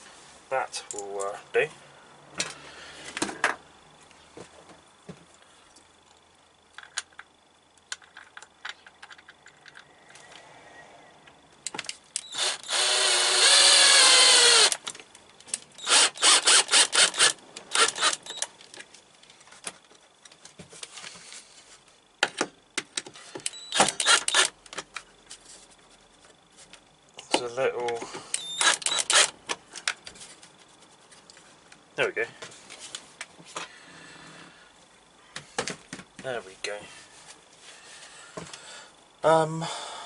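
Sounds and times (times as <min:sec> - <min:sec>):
electric drill driving screws: 0:12.2 - 0:14.8, 0:15.8 - 0:18.5, 0:23.4 - 0:24.6, 0:28.4 - 0:29.4.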